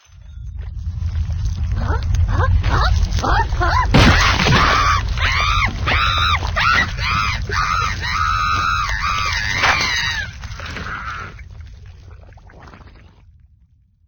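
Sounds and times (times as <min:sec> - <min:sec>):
low rumble: 0:00.0 - 0:14.0
high-pitched cartoon voice screaming: 0:01.9 - 0:11.4.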